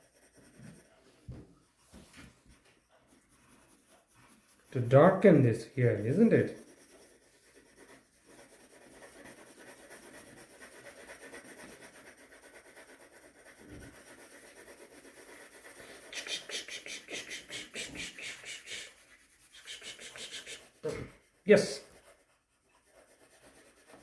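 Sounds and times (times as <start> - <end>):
pencil scratching on paper: 0.0 - 24.0.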